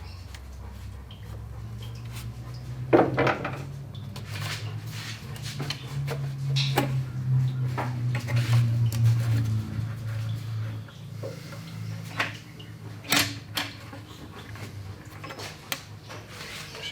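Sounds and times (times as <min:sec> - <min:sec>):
steady low hum: 0:00.0 - 0:16.4
metallic clanks and knocks: 0:02.9 - 0:03.8.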